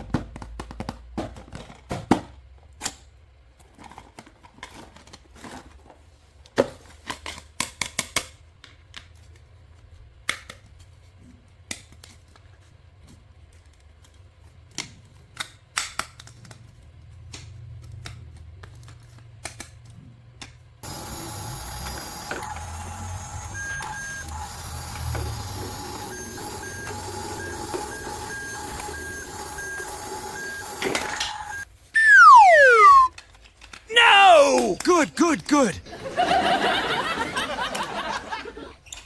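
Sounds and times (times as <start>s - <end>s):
small motor whirring: 20.8s - 31.6s
electronic tones: 22.6s - 33.1s
pulsing beep: 25.3s - 33.1s.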